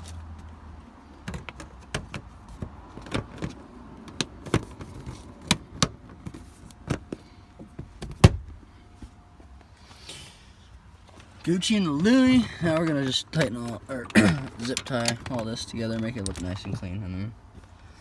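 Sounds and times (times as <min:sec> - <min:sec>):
wiring and plastic parts clicking: 0:01.2 - 0:07.2, 0:11.1 - 0:17.0.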